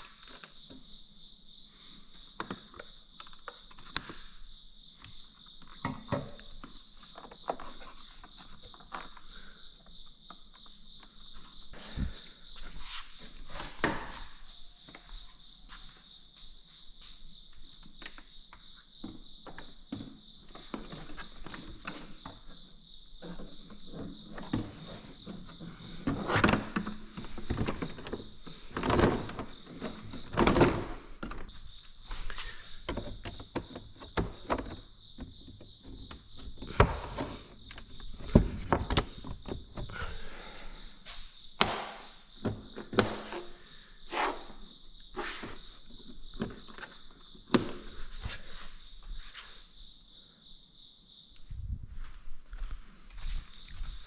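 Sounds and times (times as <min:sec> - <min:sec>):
high insect trill: 0:00.0 - 0:54.0.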